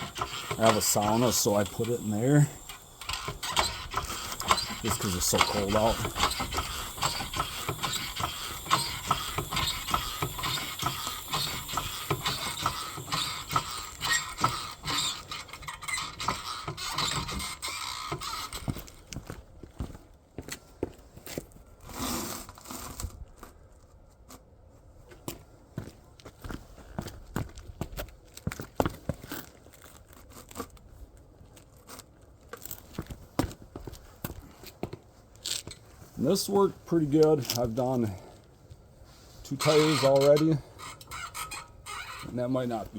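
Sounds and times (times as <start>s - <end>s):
car jack clicking: 0.0s - 18.9s.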